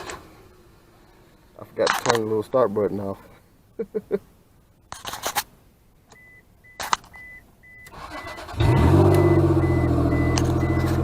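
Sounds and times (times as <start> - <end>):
warning chime beeping: 7.2 - 11.0
car engine running: 8.4 - 11.0.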